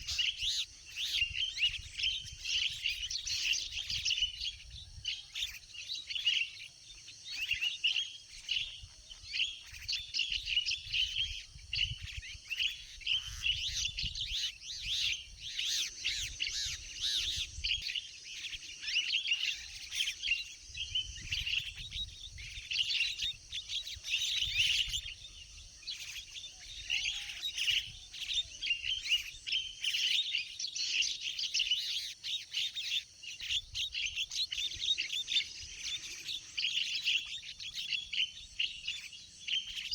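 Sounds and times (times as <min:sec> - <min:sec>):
birds chirping chorus: 0:00.0 - 0:39.9.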